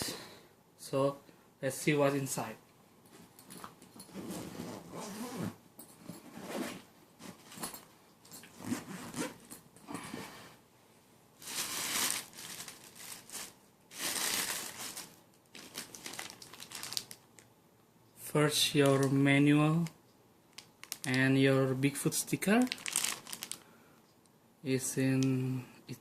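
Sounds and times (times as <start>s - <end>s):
cardboard packaging rustling: 11.4s - 17.4s, 20.8s - 21.2s, 22.6s - 23.6s.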